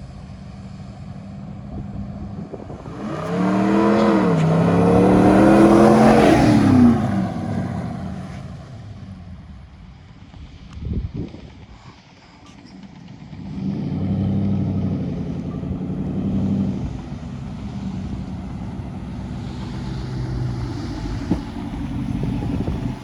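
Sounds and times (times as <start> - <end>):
car engine exhaust drone: 0.0 - 23.0.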